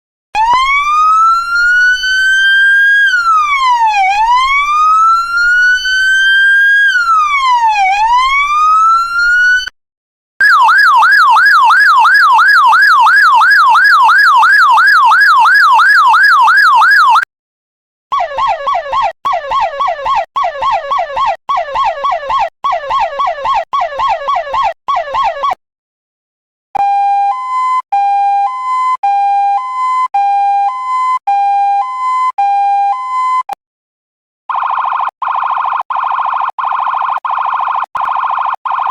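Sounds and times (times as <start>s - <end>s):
electronic police siren: 0.4s - 9.8s, 10.4s - 17.3s, 18.1s - 25.6s, 26.8s - 33.6s, 34.5s - 38.9s.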